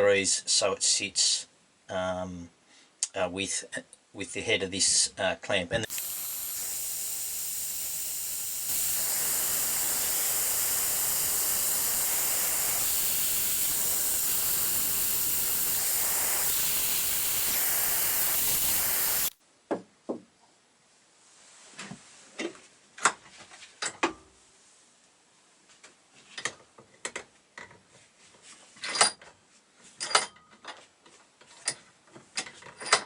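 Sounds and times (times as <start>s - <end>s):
blowtorch flame hissing: 5.8s - 19.4s.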